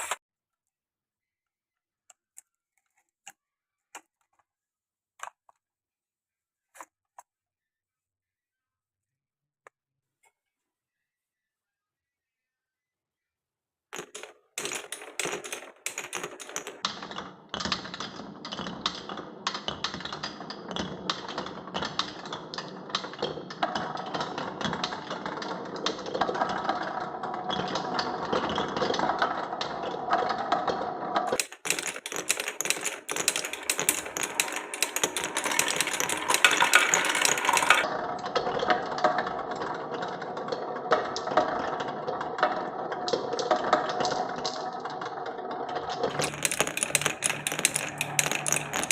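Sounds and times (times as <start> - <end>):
glass marbles rolling and clattering: 14.0 - 37.9, 39.0 - 48.9.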